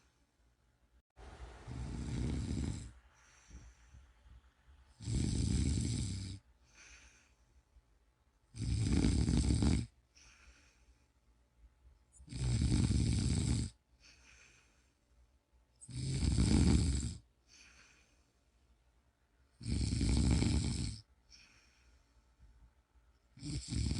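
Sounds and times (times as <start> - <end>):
soft breaths: 1.2 - 12.3, 13.8 - 15.9, 17.1 - 19.6, 20.3 - 23.9
person snoring: 1.7 - 3.1, 4.9 - 7.2, 8.5 - 9.9, 12.2 - 13.8, 15.8 - 18.0, 19.6 - 21.5, 23.4 - 23.9.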